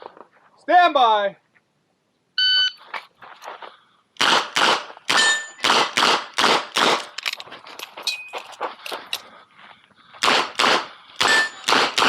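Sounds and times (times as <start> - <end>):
shot timer beep: 2.4 - 2.8
rapid gunshots: 4.2 - 7.1, 10.2 - 12.0
steel targets ringing: 5.2 - 5.6, 11.2 - 11.7.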